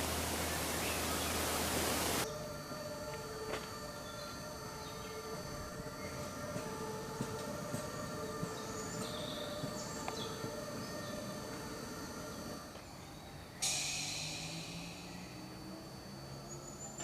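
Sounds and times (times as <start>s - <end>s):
loud high hiss: 0.0s - 2.2s, 13.6s - 15.8s
electric locomotive whine: 0.0s - 17.0s.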